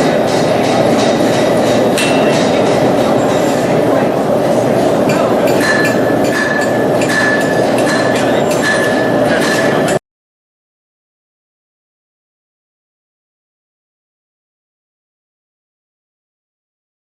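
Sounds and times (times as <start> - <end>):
loud continuous rushing noise: 0.0 - 10.0
hammer striking metal on anvil: 0.1 - 3.7, 5.0 - 10.0.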